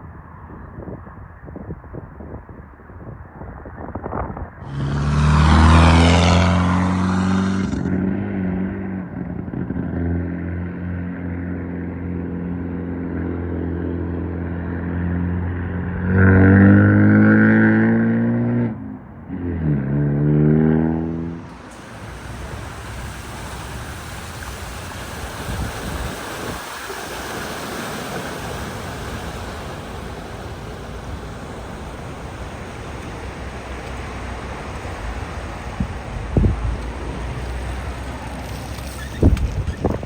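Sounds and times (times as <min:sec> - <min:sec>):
rush of water spray: 0:04.6 - 0:08.1, 0:21.3 - 0:40.0
car engine running: 0:21.4 - 0:40.0.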